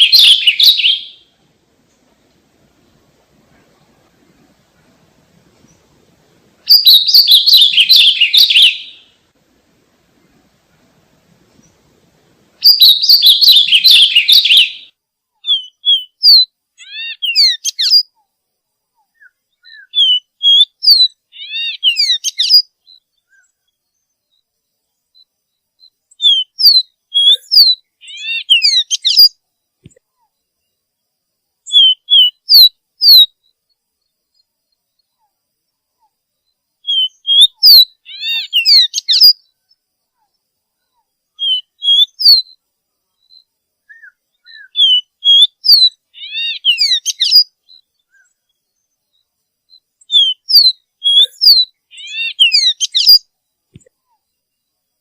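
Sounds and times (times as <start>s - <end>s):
songbird whistling and chirping: 0.0s - 1.4s, 6.6s - 9.2s, 12.6s - 18.3s, 19.0s - 30.7s, 31.6s - 33.4s, 36.0s - 42.6s, 43.2s - 54.6s.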